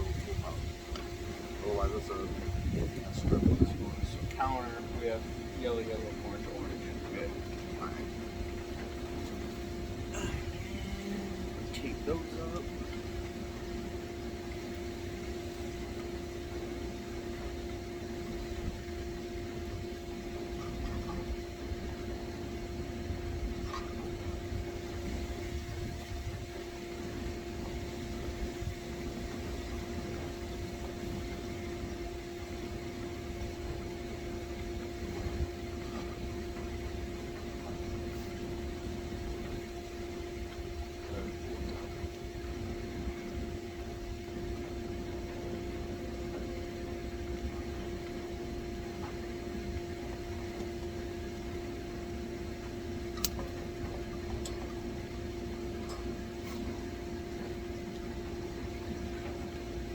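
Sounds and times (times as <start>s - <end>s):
low rumbling noise: 0.0s - 13.7s
steady machine hum: 0.0s - 59.9s.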